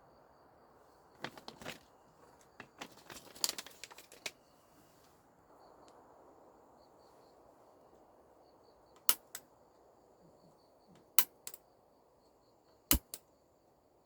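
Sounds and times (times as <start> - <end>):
crinkling and rustling handling: 1.2 - 5.2.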